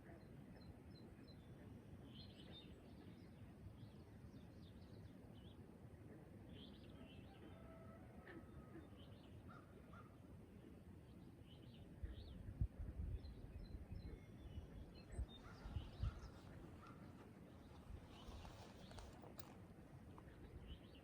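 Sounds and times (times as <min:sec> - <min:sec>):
outdoor background hush: 0:08.5 - 0:21.0
distant birds chirping: 0:14.1 - 0:21.0.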